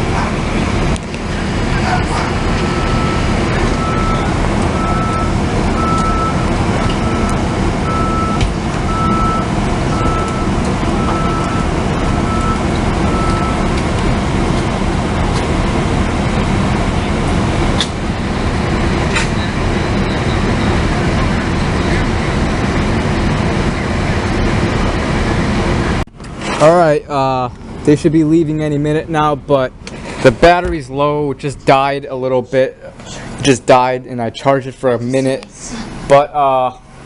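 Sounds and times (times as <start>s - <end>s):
big engine idling: 0.0s - 37.0s
vehicle backup beeper: 2.0s - 13.8s, 18.1s - 22.3s.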